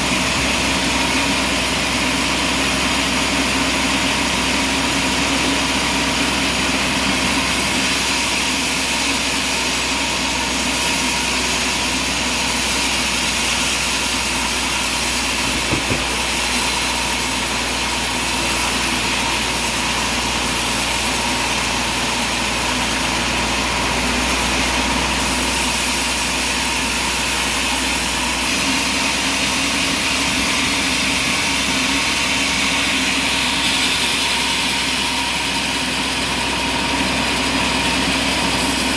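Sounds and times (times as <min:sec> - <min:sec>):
sawmill machinery droning: 0:00.0 - 0:38.9
short knock: 0:15.5 - 0:16.3.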